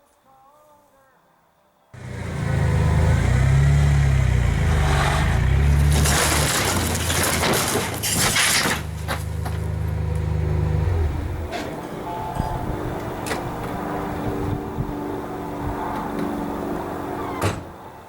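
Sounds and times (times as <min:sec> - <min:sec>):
vehicle engine running: 0:02.0 - 0:17.1
wood cracking and splintering: 0:05.4 - 0:10.3.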